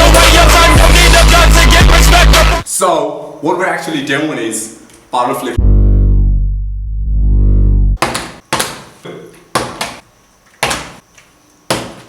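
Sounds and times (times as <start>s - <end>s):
deep bass note sweeping: 5.6s - 8.0s.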